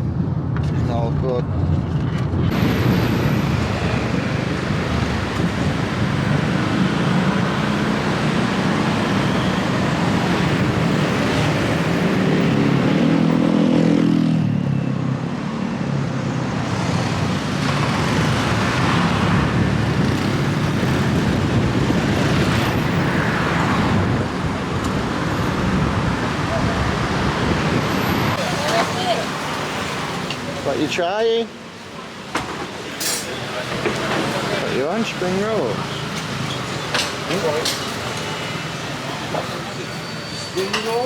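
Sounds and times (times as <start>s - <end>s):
road traffic: 0.0s - 41.0s.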